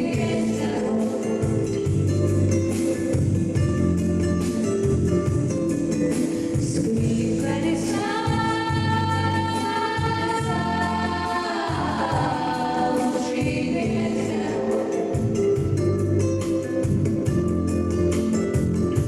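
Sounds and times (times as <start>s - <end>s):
wordless choir-like singing: 0.0s - 1.6s, 7.0s - 15.3s.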